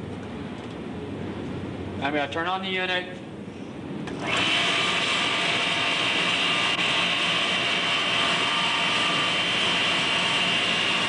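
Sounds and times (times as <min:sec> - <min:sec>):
electric motor whining: 0:04.1 - 0:11.0.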